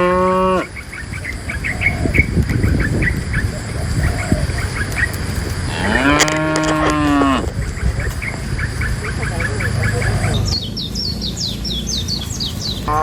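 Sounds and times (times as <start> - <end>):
cow mooing: 0.0 - 0.7, 5.7 - 7.6.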